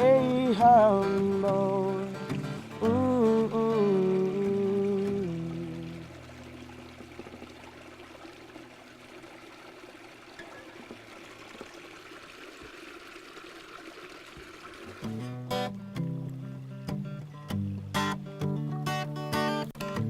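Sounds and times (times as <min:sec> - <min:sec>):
acoustic guitar strum: 0:00.0 - 0:06.2, 0:15.0 - 0:20.0
stream water trickling: 0:00.0 - 0:20.0.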